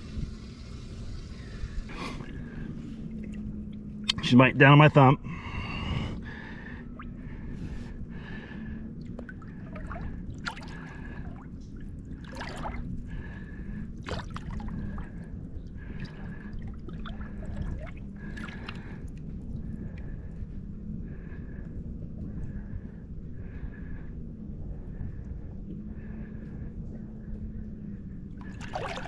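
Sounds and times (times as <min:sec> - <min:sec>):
low hum: 0:00.0 - 0:29.0
water splashing and gurgling: 0:00.9 - 0:04.2, 0:06.3 - 0:19.8, 0:28.4 - 0:29.0.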